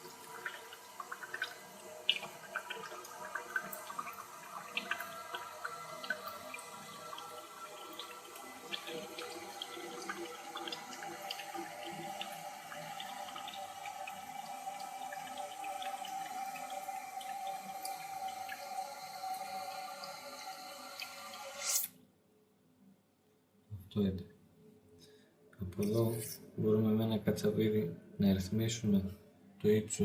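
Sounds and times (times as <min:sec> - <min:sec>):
water splashes and drips: 0:00.0 - 0:21.8
water filling toilet cistern: 0:00.0 - 0:21.9.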